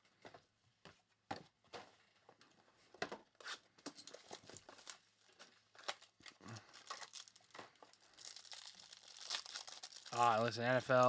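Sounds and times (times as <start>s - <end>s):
foil wrappers crinkling and tearing: 4.0s - 11.0s.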